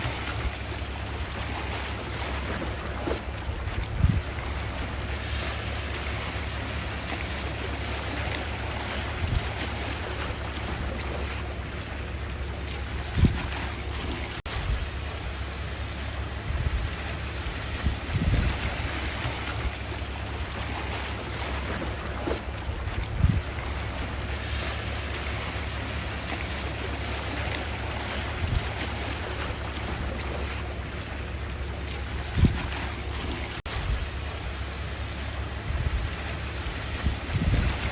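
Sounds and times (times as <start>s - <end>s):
sea waves washing: 0.0s - 37.9s
wind rumbling on microphone: 0.0s - 37.9s.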